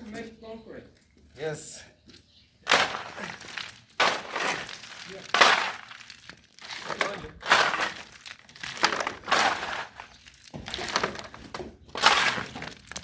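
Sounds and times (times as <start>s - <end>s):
shovels scraping sand and gravel: 2.7s - 13.0s.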